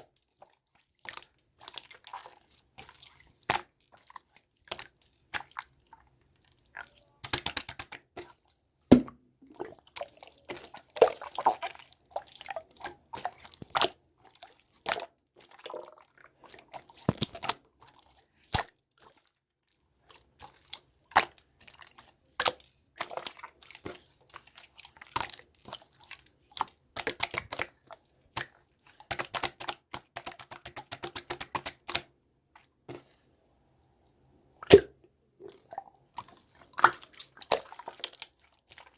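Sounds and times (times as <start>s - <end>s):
slime squishing and popping: 17.0s - 17.6s, 34.6s - 35.0s.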